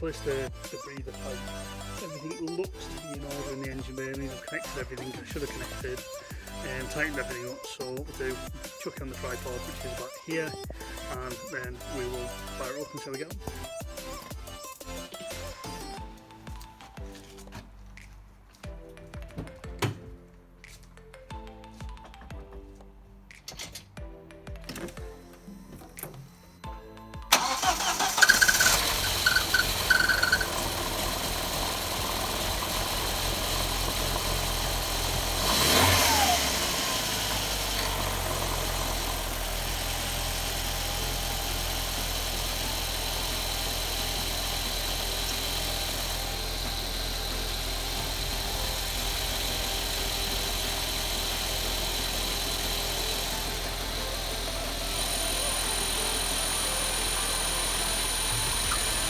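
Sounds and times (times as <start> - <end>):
car engine starting and running: 27.3 - 59.0
engine revving: 27.3 - 59.0.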